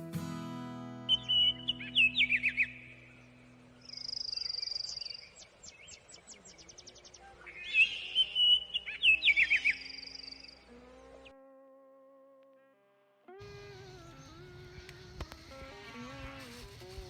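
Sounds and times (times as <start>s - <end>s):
birds singing: 1.1s - 10.7s.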